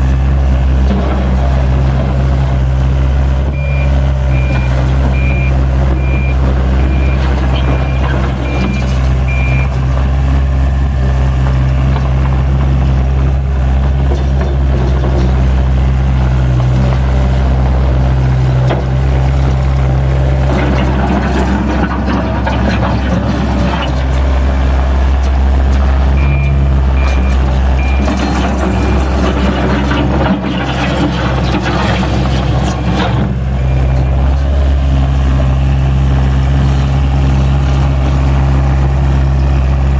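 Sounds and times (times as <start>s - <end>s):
diesel engine running: 0.0s - 39.9s
reverse alarm beeping: 3.5s - 9.8s, 26.2s - 29.1s.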